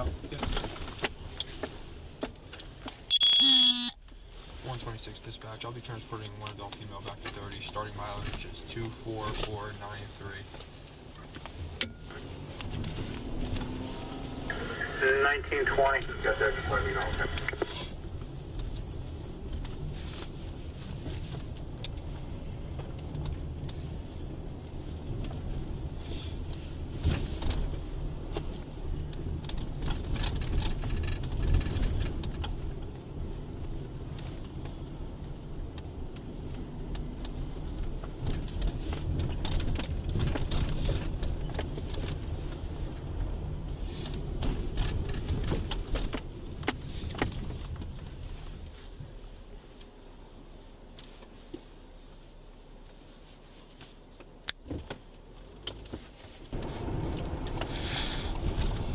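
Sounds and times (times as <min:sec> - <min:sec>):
engine and road noise: 0:00.0 - 0:58.9
light clicks and rattles: 0:26.4 - 0:33.0, 0:33.6 - 0:48.7.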